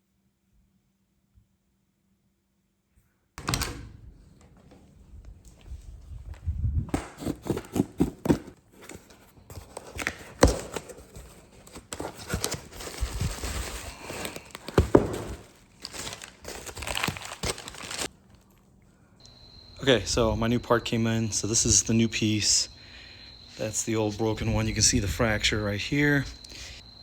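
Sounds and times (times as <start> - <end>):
packaging crinkling and rustling: 5.4 - 18.6.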